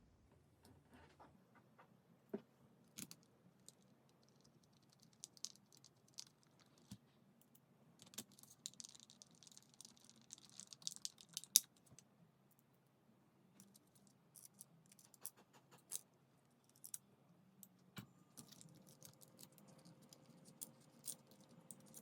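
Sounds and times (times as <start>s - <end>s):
small parts clicking and rattling: 2.9s - 7.0s, 8.0s - 12.0s, 16.6s - 17.0s, 18.4s - 22.0s.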